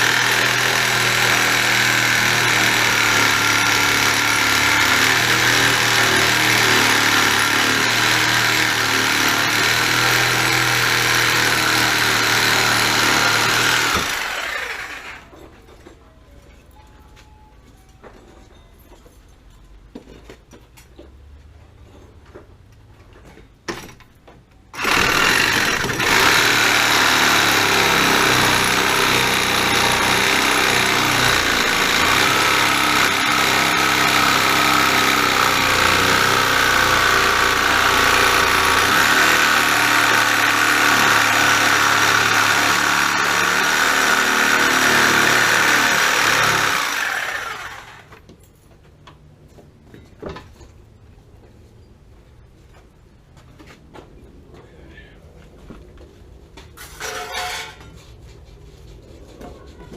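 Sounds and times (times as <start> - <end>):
power saw cutting wall: 0.0 - 15.4, 24.8 - 48.2.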